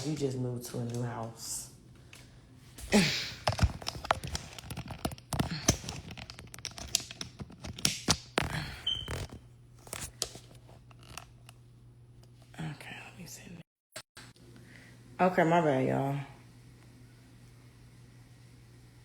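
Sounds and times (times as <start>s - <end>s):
handling knocks and clicks: 3.4s - 11.5s.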